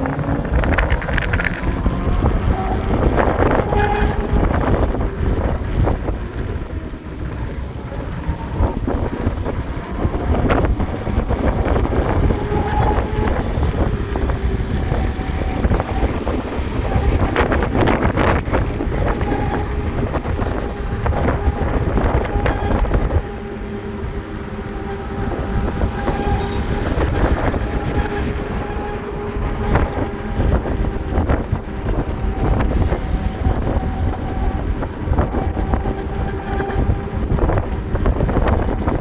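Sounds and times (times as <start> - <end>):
steady rumble: 0.0 - 39.0
wind on microphone: 0.0 - 39.0.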